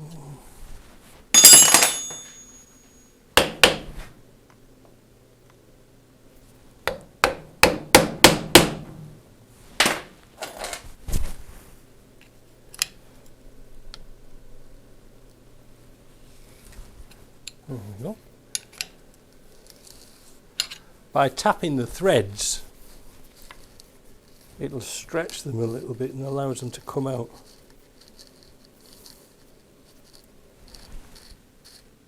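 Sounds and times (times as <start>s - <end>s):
hammer striking metal: 1.4s - 3.8s.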